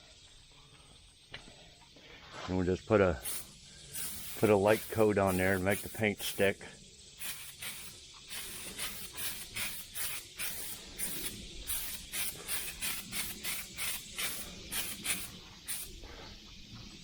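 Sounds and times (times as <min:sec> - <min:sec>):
aerosol can spraying bursts: 0:03.2 - 0:06.5, 0:07.2 - 0:16.0.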